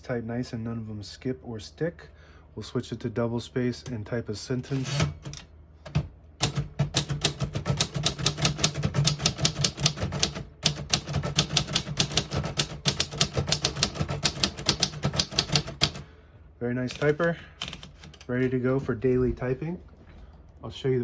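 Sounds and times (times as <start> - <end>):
typewriter key strikes: 4.8 - 16.0.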